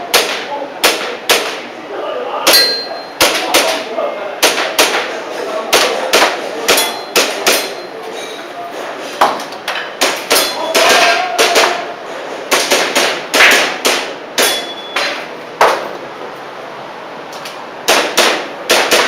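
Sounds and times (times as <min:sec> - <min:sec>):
airsoft pistol shots: 0:12.5 - 0:14.7, 0:17.9 - 0:19.0.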